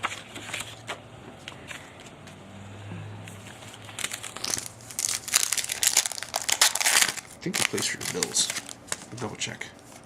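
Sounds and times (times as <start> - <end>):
trading cards clicking and rustling: 3.7 - 9.4.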